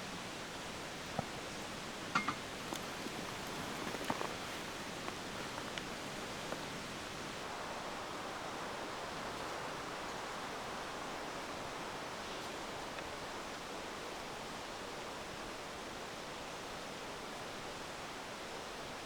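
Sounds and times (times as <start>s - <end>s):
campfire hissing: 0.2s - 19.0s
fire crackles and pops: 2.5s - 6.8s.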